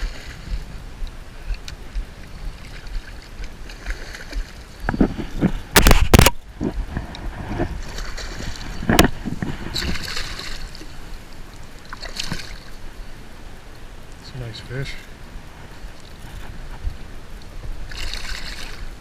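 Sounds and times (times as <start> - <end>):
fish thrashing in water: 2.6 - 6.4, 7.6 - 10.9, 17.9 - 18.9.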